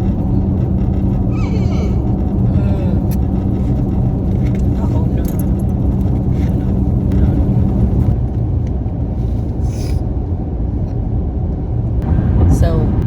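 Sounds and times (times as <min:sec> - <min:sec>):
car road noise rumble: 0:00.0 - 0:13.0.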